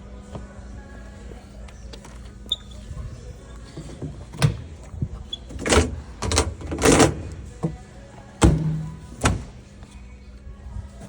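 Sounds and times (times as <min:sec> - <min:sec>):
washing machine doors clunking: 0:03.8 - 0:07.8, 0:08.4 - 0:09.6.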